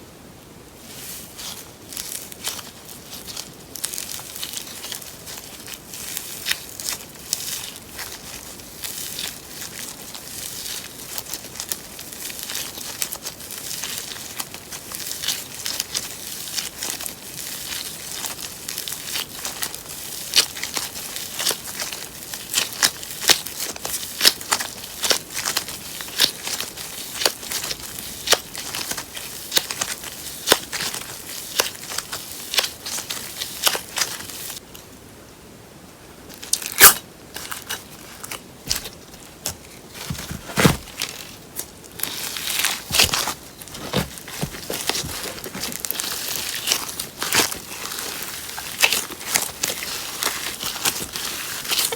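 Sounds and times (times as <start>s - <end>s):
slime crackling and popping: 36.4s - 37.7s, 44.4s - 51.9s.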